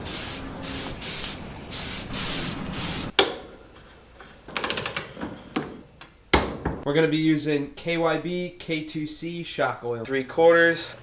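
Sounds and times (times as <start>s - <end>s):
aerosol spray can hissing: 0.0s - 3.1s.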